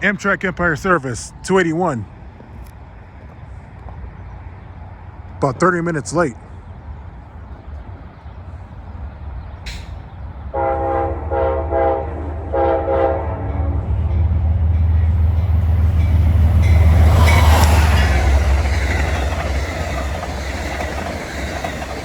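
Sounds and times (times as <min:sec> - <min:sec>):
low train rumble: 0:00.0 - 0:22.0
locomotive horn blasts: 0:10.5 - 0:14.0.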